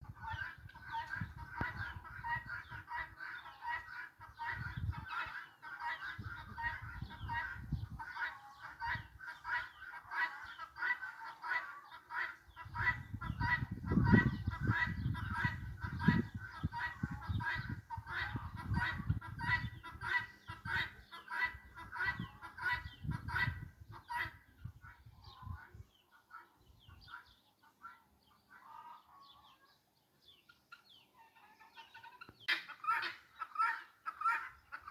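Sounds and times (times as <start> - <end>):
geese honking: 0.3 - 24.4.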